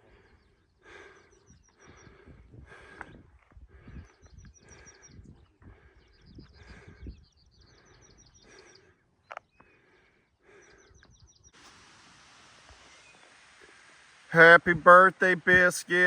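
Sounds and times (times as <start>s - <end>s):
steady hiss: 11.6s - 16.0s.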